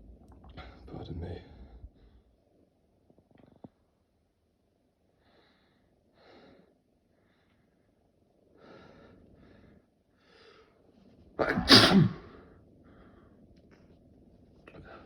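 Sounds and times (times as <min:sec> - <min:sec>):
man sneezing: 0:11.4 - 0:12.3.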